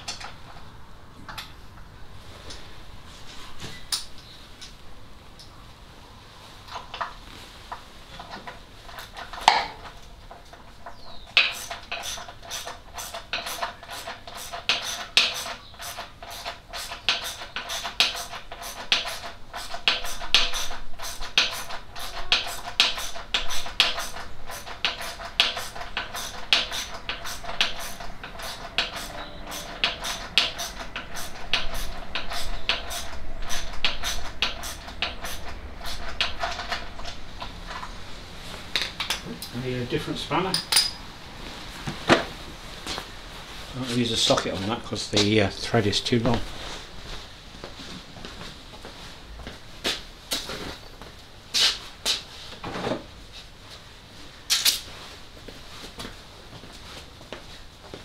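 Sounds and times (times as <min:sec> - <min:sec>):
spanner clicking on nut: 0:10.9 - 0:37.8
sharp metal clank: 0:27.6 - 0:30.8, 0:40.5 - 0:41.0.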